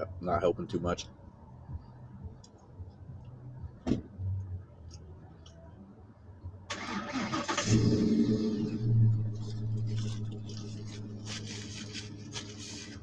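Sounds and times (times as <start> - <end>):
engine cranking and idling: 6.7 - 12.7.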